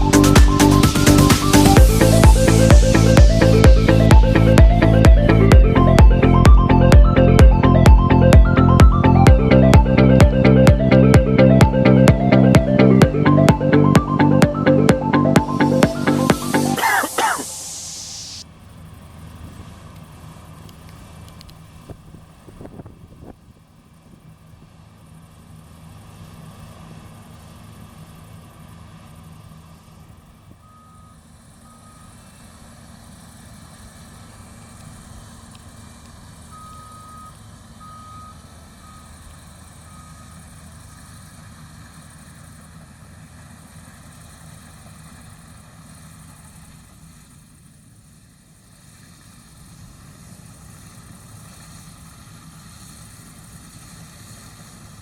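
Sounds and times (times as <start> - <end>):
diesel engine running: 0.0 - 20.8
reversing alarm beeps: 30.6 - 32.4, 36.5 - 39.2, 39.8 - 40.4.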